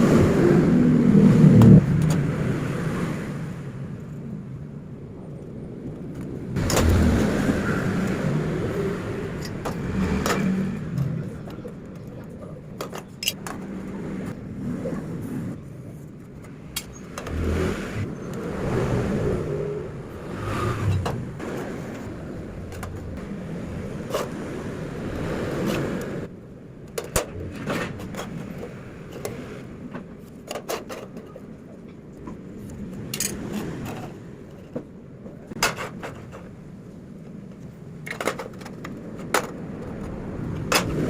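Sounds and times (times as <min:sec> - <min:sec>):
metal scraping and rumbling: 0:06.6 - 0:16.0, 0:16.9 - 0:24.7.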